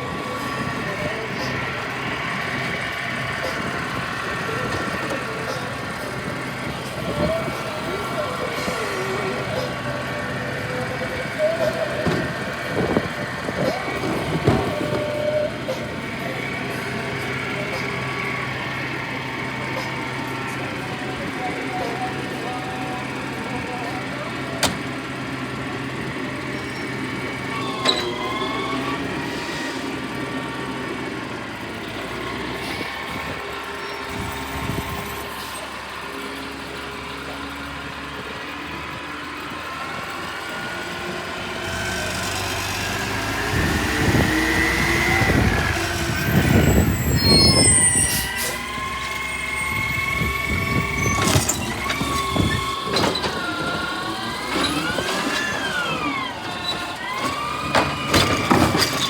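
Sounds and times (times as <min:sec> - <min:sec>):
garbage truck engine whining: 0:00.0 - 0:59.0.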